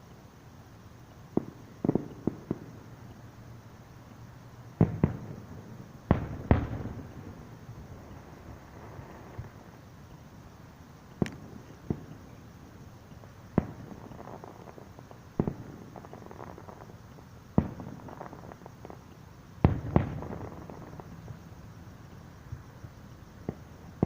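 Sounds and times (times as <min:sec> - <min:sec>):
fireworks crackling: 0:00.0 - 0:24.0
fireworks booming: 0:01.3 - 0:03.1, 0:04.7 - 0:09.8, 0:11.1 - 0:12.5, 0:13.5 - 0:21.6.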